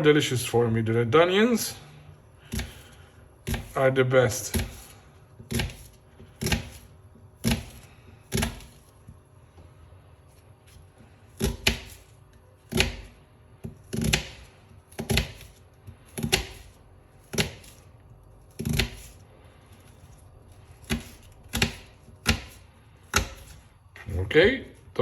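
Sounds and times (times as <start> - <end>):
knife chopping on cutting board: 2.4 - 3.8, 4.4 - 8.9, 11.3 - 17.9, 18.5 - 19.2, 19.8 - 23.7.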